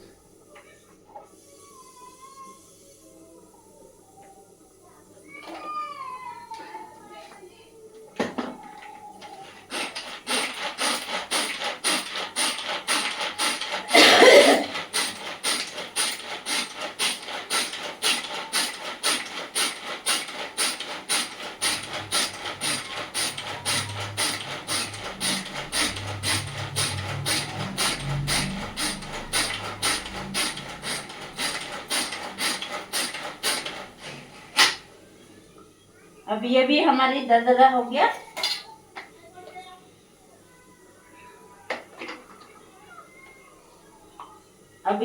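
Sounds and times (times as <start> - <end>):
grinding on a stone by hand: 9.5 - 34.2.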